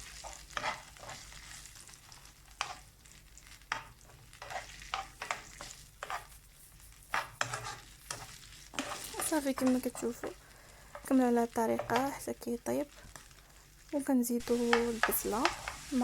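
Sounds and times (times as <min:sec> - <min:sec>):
utensil scraping a pan: 0:00.0 - 0:02.9, 0:03.7 - 0:11.2, 0:14.5 - 0:16.0
food sizzling in a pan: 0:00.0 - 0:16.0.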